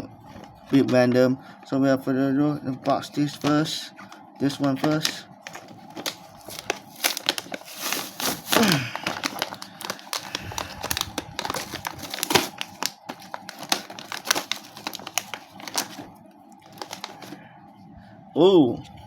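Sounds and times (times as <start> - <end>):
toy packaging crinkling: 4.5 - 17.4.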